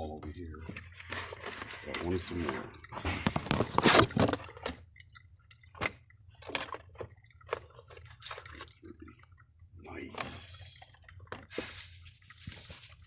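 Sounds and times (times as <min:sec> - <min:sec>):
packaging rustling and crinkling: 0:00.6 - 0:04.6.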